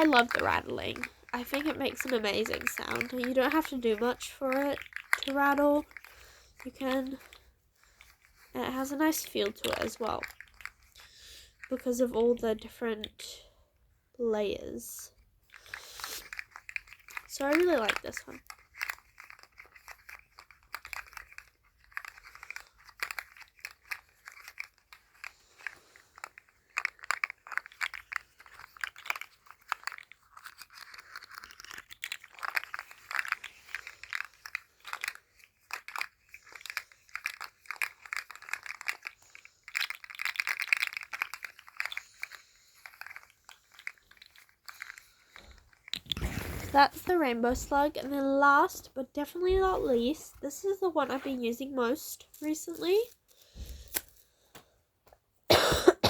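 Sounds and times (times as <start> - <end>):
plastic toy segments clicking: 0.0 - 13.2, 14.8 - 46.2.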